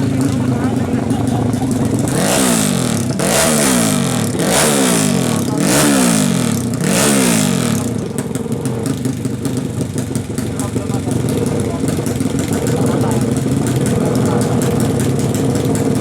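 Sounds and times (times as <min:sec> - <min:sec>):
motorcycle engine revving: 0:00.0 - 0:16.0.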